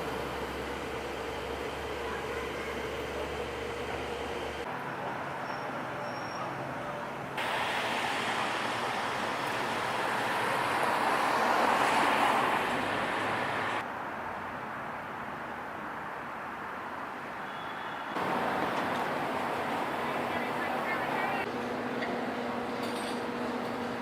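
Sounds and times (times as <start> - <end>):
road traffic: 0.0 - 24.0
vehicle passing: 8.0 - 13.8, 18.2 - 21.5.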